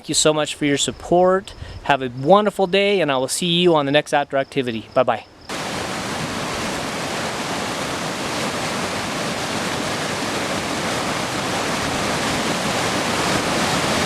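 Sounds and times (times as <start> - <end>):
waterfall rushing: 5.5 - 14.0.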